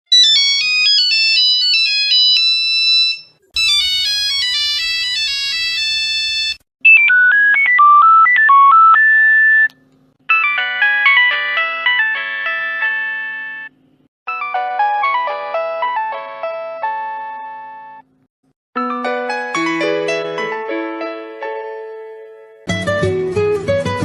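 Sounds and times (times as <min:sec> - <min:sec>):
mobile phone ringtones: 0:00.2 - 0:09.7, 0:10.3 - 0:13.7.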